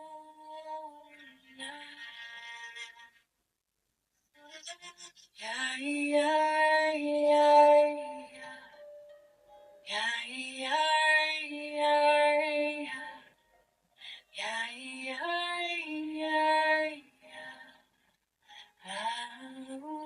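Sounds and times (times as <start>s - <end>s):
woman singing a mantra: 0.0s - 3.1s, 5.4s - 8.8s, 14.4s - 17.8s, 18.9s - 20.0s.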